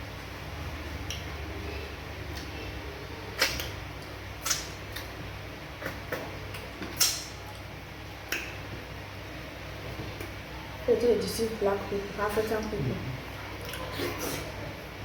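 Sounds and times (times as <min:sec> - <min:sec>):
wet mouth smacks: 0:03.4 - 0:05.1, 0:05.8 - 0:07.7, 0:08.3 - 0:08.6.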